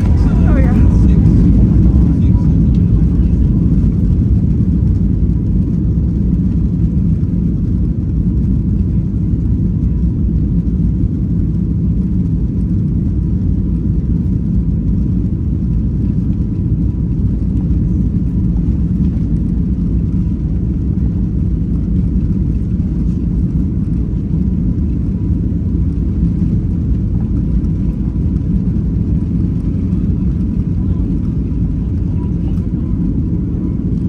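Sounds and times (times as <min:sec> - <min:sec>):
airliner engine rumble in cabin: 0:00.0 - 0:34.0.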